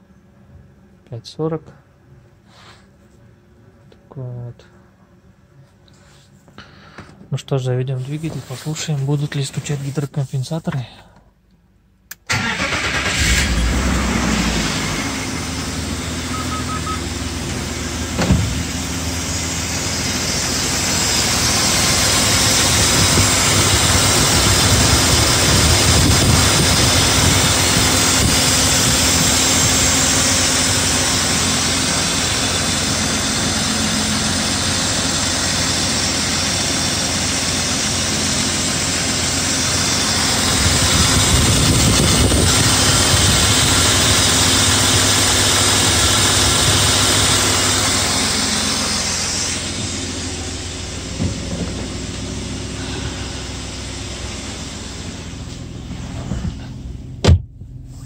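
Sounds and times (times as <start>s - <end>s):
car engine idling: 12.3s - 58.0s.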